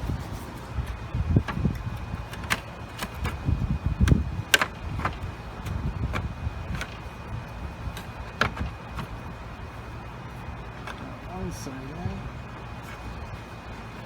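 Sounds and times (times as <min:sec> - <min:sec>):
low rumble of handling: 0:00.0 - 0:14.0
plastic parts clicking and knocking: 0:00.8 - 0:07.1, 0:07.9 - 0:09.2, 0:10.8 - 0:11.0.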